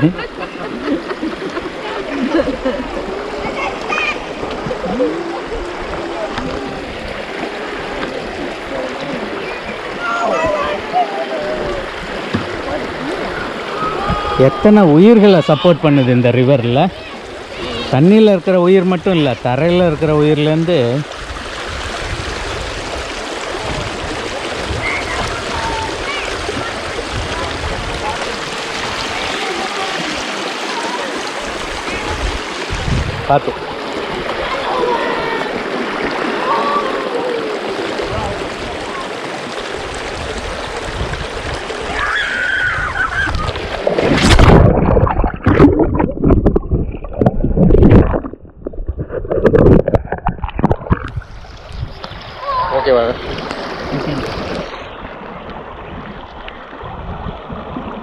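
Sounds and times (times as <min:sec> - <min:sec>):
water babbling over rocks: 0:00.0 - 0:58.0
microphone jostling knocks: 0:12.3 - 0:12.6.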